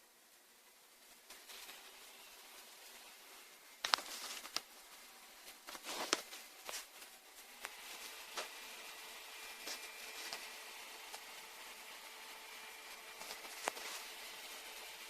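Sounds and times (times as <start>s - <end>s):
laptop parts and tools clicking: 3.8s - 4.7s.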